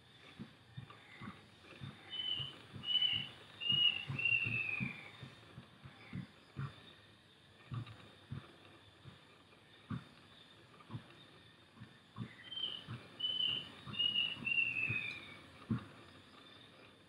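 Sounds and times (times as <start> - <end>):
bird whistling: 2.1 - 5.1, 12.3 - 15.4.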